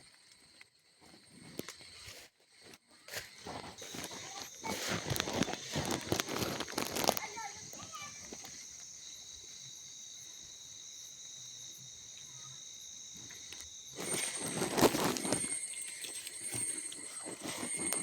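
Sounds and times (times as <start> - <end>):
cicadas droning: 0.0 - 18.0
rustling and crunching in vegetation: 1.0 - 8.9, 13.3 - 18.0
high insect drone: 3.4 - 18.0.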